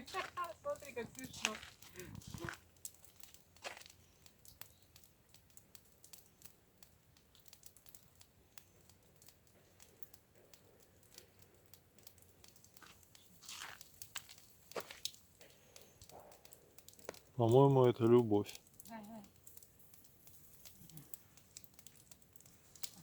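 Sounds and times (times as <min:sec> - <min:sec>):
soft rustle: 0:12.7 - 0:15.5.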